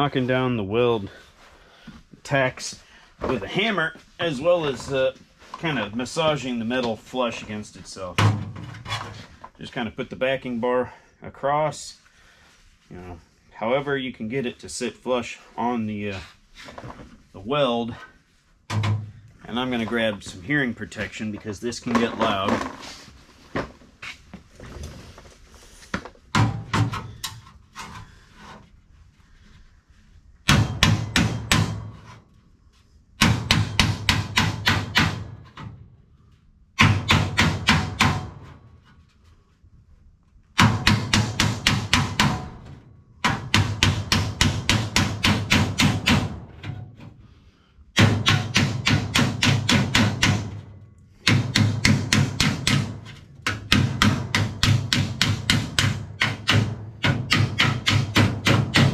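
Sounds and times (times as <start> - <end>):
hammer striking sheet steel: 30.4 - 32.2, 33.2 - 35.7, 36.8 - 38.6, 40.6 - 46.8, 48.0 - 58.9.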